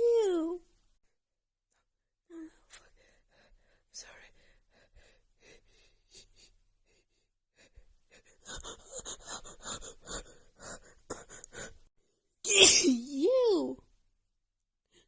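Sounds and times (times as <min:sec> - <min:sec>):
woman sneezing: 0:12.5 - 0:13.2.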